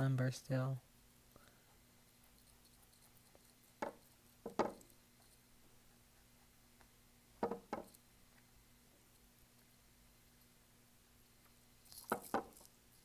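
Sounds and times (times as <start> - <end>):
brush knocking on hard surface: 3.8 - 4.8, 7.4 - 8.0, 12.1 - 12.6.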